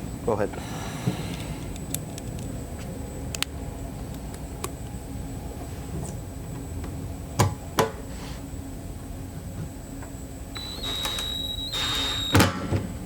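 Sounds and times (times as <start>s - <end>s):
cordless drill whirring: 10.5s - 12.7s.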